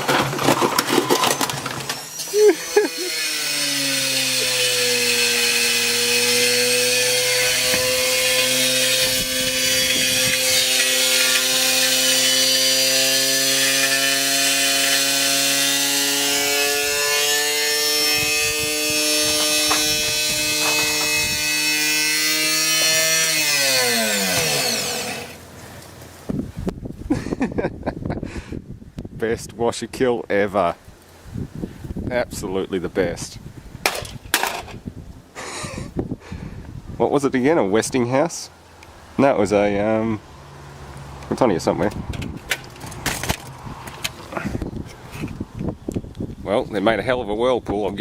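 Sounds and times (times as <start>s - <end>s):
grinding and rubbing: 0.0s - 25.5s, 41.6s - 45.4s.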